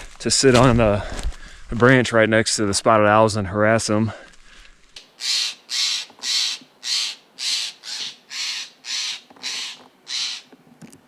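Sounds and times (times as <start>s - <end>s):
jay harsh scolding calls: 5.0s - 10.5s.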